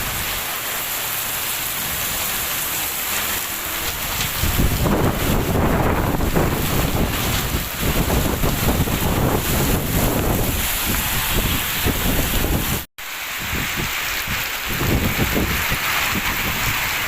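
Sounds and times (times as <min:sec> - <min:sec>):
heavy rain hissing: 0:00.0 - 0:17.0
wind buffeting microphone: 0:03.8 - 0:17.0.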